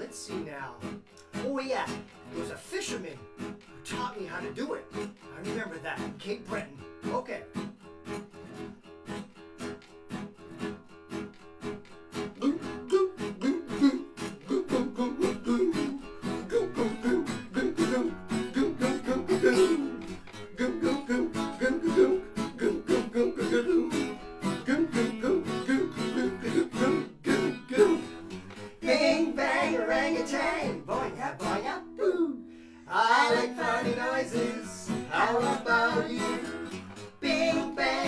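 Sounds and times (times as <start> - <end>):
acoustic guitar strumming: 0.0 - 38.0
person imitating seal barking: 12.4 - 20.0.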